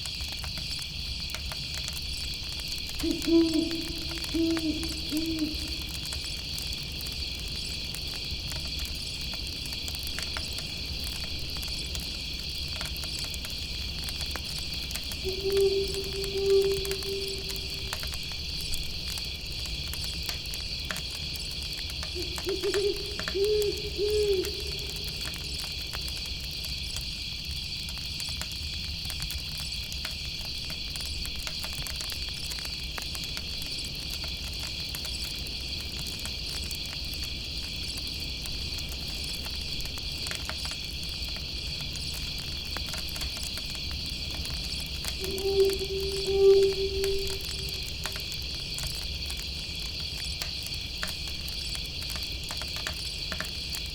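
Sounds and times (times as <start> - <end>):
insects chirping: 0.0 - 53.9
campfire crackling: 0.2 - 29.2, 29.9 - 53.9
owl hooting: 3.0 - 6.2, 15.2 - 18.4, 22.1 - 25.7, 45.2 - 49.0.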